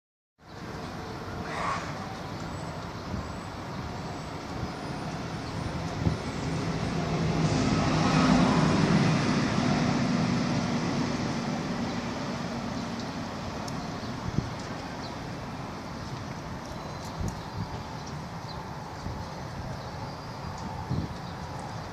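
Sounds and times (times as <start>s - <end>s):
passing vehicles: 0.4s - 21.9s
heavy vehicle engine passing: 3.3s - 17.0s.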